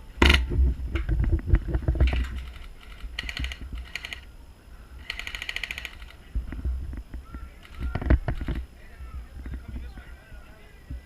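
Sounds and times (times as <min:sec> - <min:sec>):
airsoft guns firing bursts: 0:02.3 - 0:04.3, 0:05.0 - 0:06.2.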